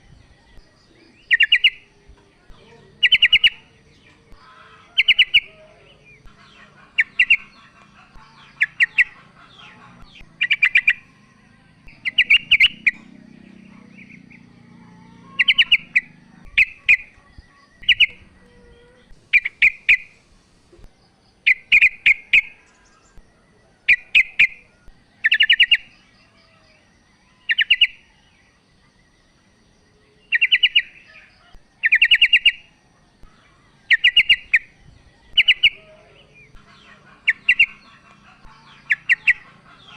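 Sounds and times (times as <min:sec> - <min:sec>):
bird chattering calls: 0:01.0 - 0:11.3, 0:11.9 - 0:20.2, 0:21.5 - 0:23.2, 0:25.2 - 0:25.9, 0:27.5 - 0:27.9, 0:30.3 - 0:32.7, 0:33.8 - 0:39.9.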